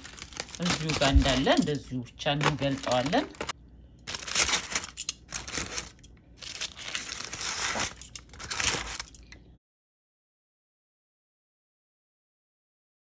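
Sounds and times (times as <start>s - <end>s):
covering crinkling and rustling: 0.0s - 9.3s.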